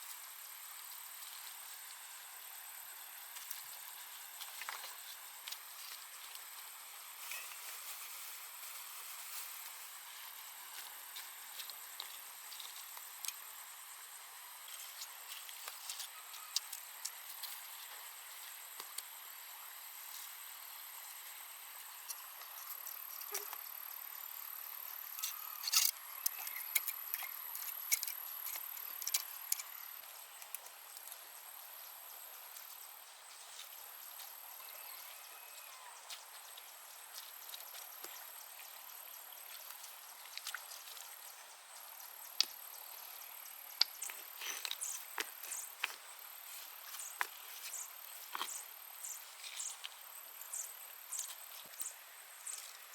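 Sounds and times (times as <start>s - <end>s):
faint forest hiss: 0.0s - 52.9s
insects trilling: 0.0s - 52.9s.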